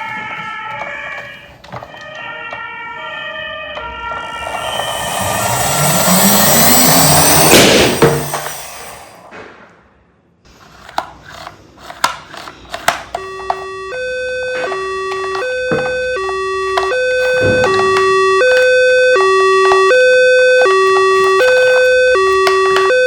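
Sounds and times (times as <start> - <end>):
toy two-tone siren: 0.0 - 9.1, 12.8 - 23.0
rush of noise: 4.2 - 9.3
loud bang: 4.2 - 9.9.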